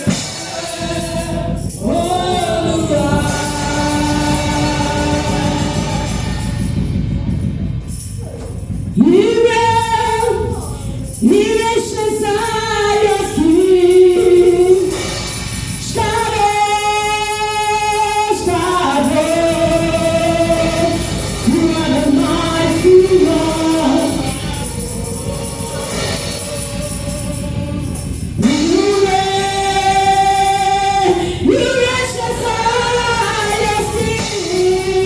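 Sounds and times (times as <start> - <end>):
gospel singing: 0.0 - 7.4, 8.0 - 35.0.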